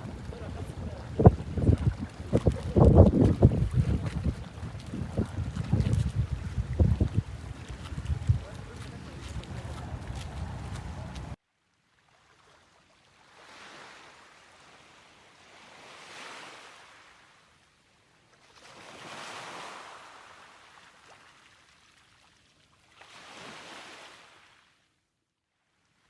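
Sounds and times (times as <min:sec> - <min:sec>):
waves breaking on beach: 0:00.0 - 0:11.4, 0:13.2 - 0:17.4, 0:18.5 - 0:21.7, 0:23.0 - 0:24.6.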